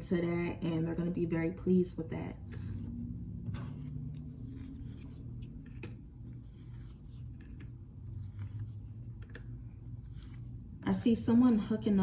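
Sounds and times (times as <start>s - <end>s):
low steady hum: 0.0s - 12.0s
cards rustling and tapping: 3.5s - 10.6s.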